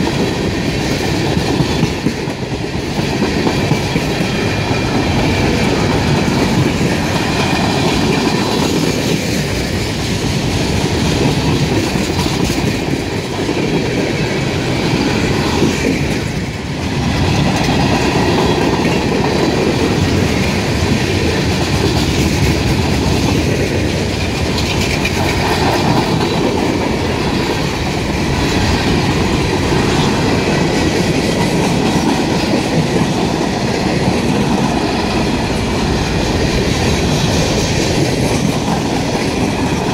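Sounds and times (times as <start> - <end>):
train wheels rattling over rails: 0.0 - 39.9.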